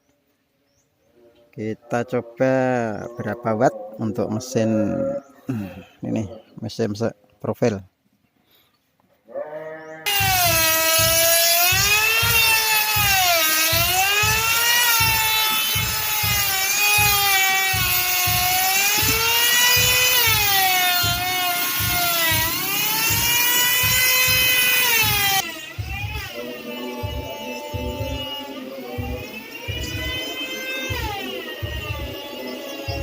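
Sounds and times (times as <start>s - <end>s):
low pulsing: 10.1s - 33.0s
router whining at high speed: 10.1s - 33.0s.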